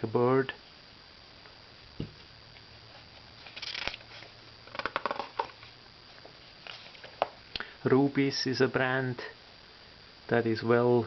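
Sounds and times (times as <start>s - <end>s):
paper crinkling: 2.9s - 5.7s, 6.4s - 7.3s
paper pages turning: 2.9s - 5.7s, 6.6s - 7.3s.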